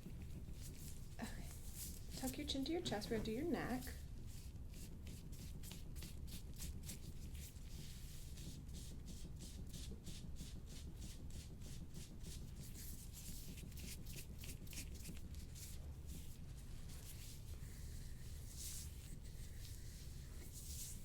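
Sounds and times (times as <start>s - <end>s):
scraping tool rubbing on skin: 0.1s - 21.0s.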